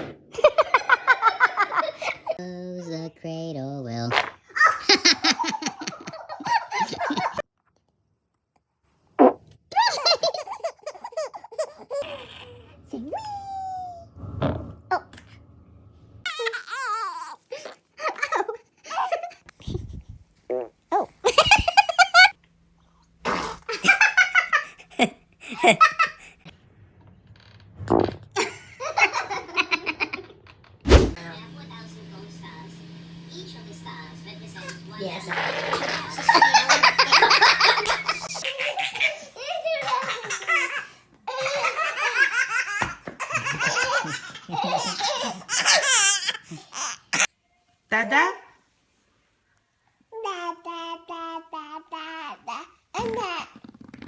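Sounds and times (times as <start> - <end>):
laughter in pulsing bursts: 0.3 - 2.4, 4.6 - 7.4, 21.2 - 22.4, 23.7 - 26.5, 28.4 - 30.8, 35.7 - 42.4, 43.2 - 46.7
baby laughing and squealing: 9.8 - 14.0, 16.3 - 19.4, 42.3 - 47.3
low thump: 14.2 - 16.2, 30.9 - 31.2.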